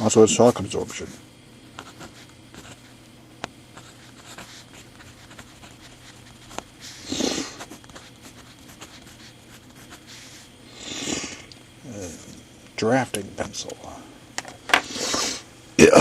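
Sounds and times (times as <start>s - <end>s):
loud sniff: 6.8s - 7.8s, 10.0s - 11.5s, 14.8s - 15.5s.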